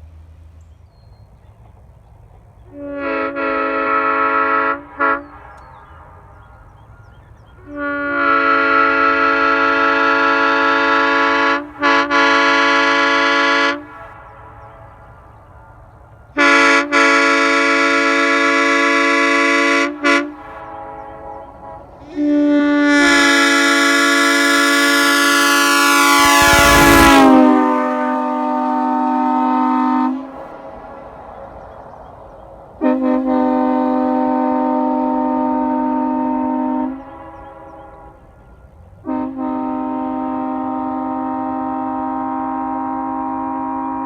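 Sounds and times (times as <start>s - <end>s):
train horn chord blasts: 2.6s - 44.0s.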